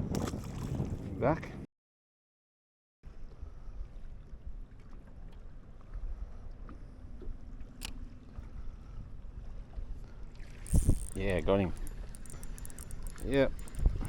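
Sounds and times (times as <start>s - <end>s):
wind buffeting microphone: 0.0s - 1.6s, 10.5s - 14.0s
boat engine rumble: 3.1s - 14.0s.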